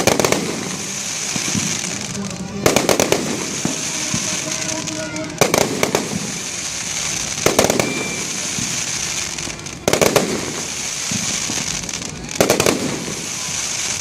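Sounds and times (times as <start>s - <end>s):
fireworks bangs: 0.0s - 14.0s
steady hiss: 0.0s - 14.0s.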